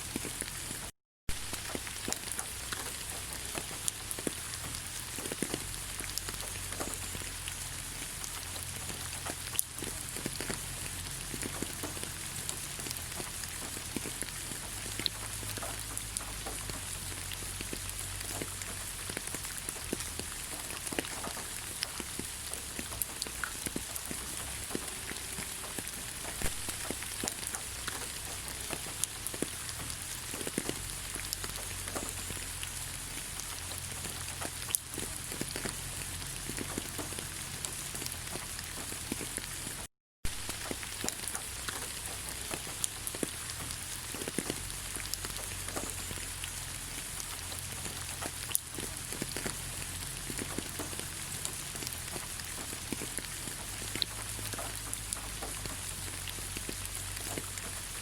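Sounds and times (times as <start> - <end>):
rain falling on leaves: 0.0 - 58.0
drops ticking on foliage: 0.1 - 58.0.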